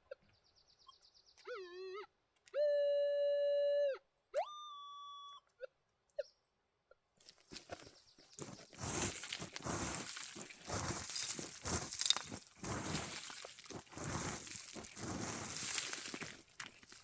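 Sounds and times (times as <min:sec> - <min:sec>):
gravel crunching and scraping: 0:07.2 - 0:17.0.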